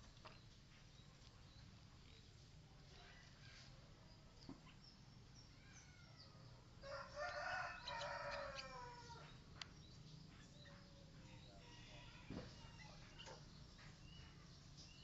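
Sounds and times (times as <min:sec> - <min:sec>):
small birds chirping: 0:00.0 - 0:15.0
rooster crowing: 0:06.8 - 0:09.3, 0:11.5 - 0:12.9.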